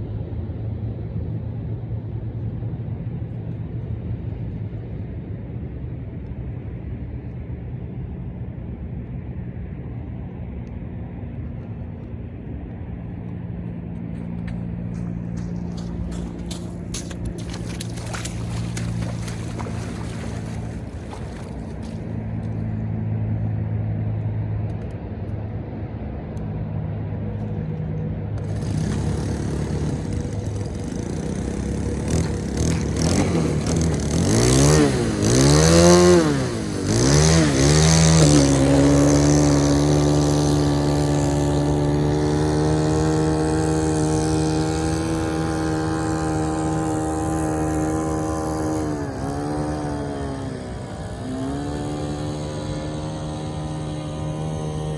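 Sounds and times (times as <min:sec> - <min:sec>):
small boat engine revving: 0:13.8 - 0:24.6, 0:28.4 - 0:54.9.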